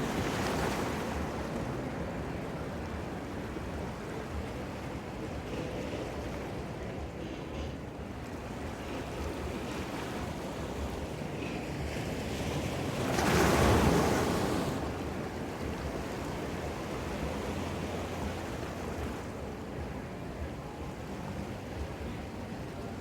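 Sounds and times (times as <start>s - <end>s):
ocean surf washing ashore: 8.6s - 20.0s.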